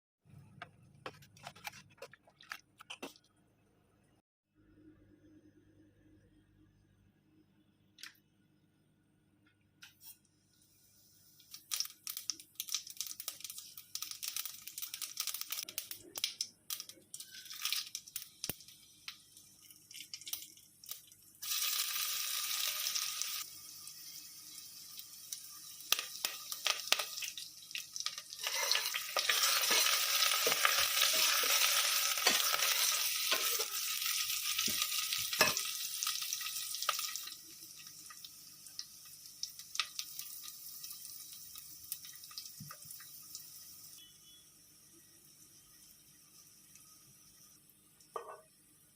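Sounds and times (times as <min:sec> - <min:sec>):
spices frying in hot oil: 0:10.5 - 0:48.9.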